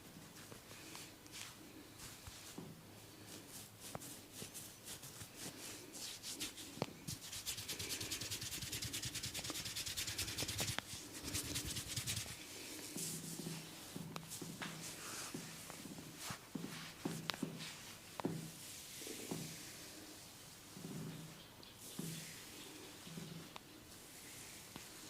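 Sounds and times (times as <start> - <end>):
fingers scratching through hair: 3.3 - 12.4.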